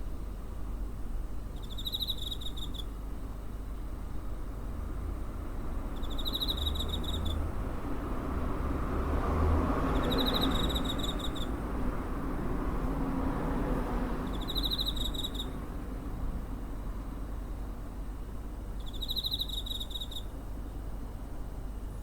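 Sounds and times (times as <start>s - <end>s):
cricket chirping trills: 1.4s - 3.1s, 5.4s - 8.6s, 9.7s - 11.8s, 13.2s - 15.8s, 17.2s - 20.5s.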